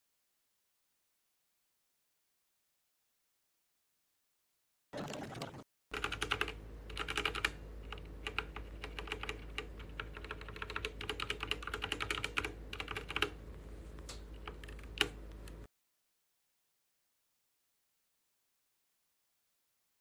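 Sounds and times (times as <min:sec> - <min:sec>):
mechanical keyboard typing: 0:05.0 - 0:13.4.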